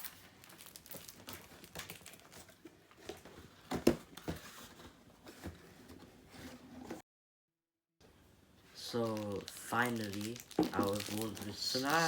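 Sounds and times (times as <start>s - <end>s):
packaging rustling: 0.0s - 3.3s, 8.8s - 12.0s.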